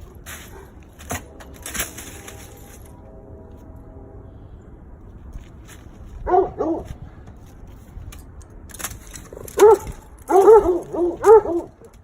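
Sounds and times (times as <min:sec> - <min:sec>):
dog barking: 0:06.2 - 0:06.9, 0:09.6 - 0:11.9.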